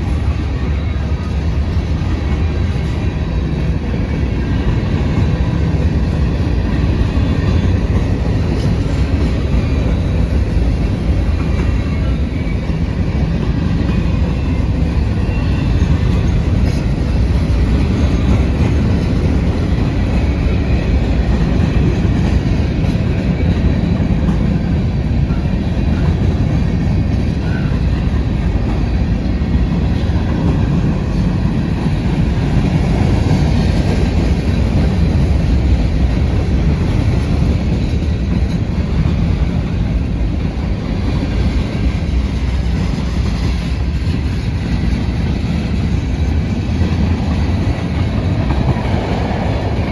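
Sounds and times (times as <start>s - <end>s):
clickety-clack over rail joints: 0.0s - 49.9s
train wheels rumbling on rails: 0.0s - 49.9s.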